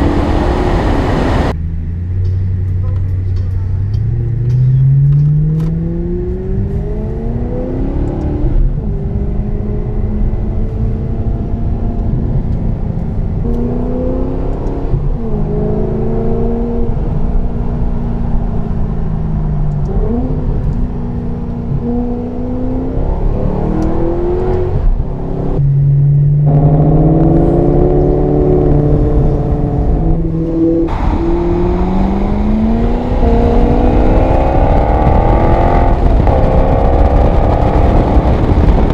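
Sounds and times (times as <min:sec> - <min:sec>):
car engine accelerating: 0:00.0 - 0:38.9.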